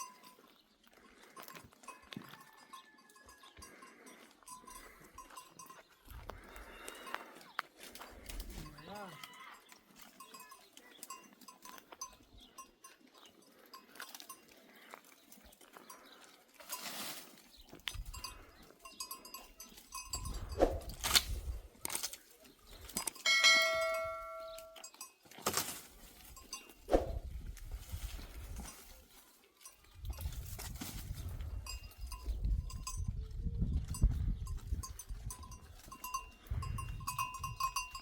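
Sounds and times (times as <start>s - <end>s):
goat bells clinking: 0.0s - 38.0s
goat bleating: 8.7s - 9.8s.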